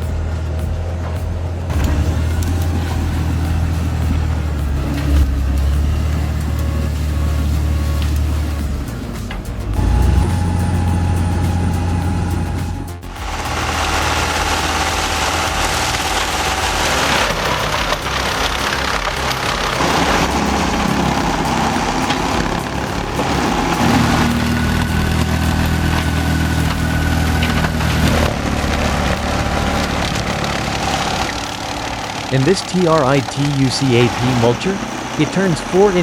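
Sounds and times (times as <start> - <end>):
heavy machinery engines under load: 0.0 - 36.0
mechanical noise: 0.0 - 36.0.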